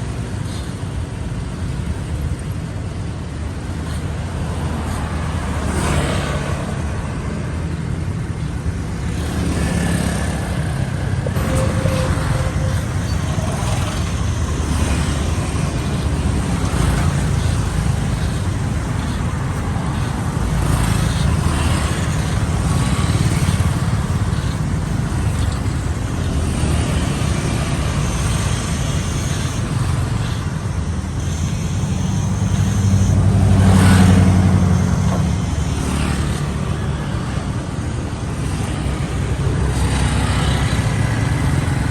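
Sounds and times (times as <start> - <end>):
street traffic rumble: 0.0 - 41.9
vehicle passing close: 9.0 - 37.3.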